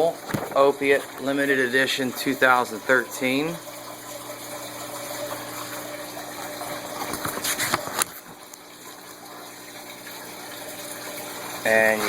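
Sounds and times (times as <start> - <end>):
paper rustling: 0.3 - 0.6, 7.1 - 8.1.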